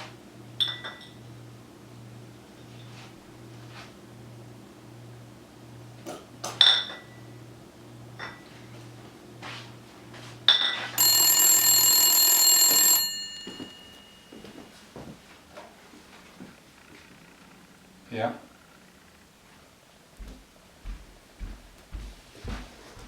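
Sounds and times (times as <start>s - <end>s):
loud bell-like ring: 11.0s - 14.7s.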